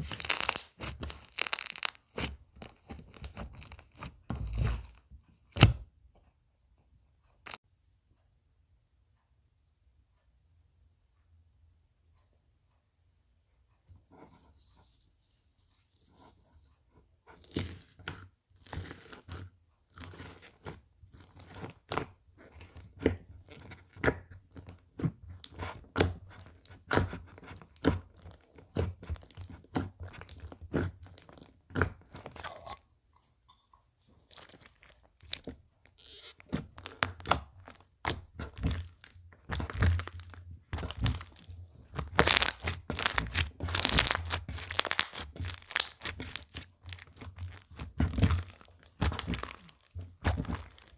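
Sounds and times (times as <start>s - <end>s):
slime crackling and popping: 0.0s - 4.9s, 22.7s - 32.7s, 34.2s - 50.9s.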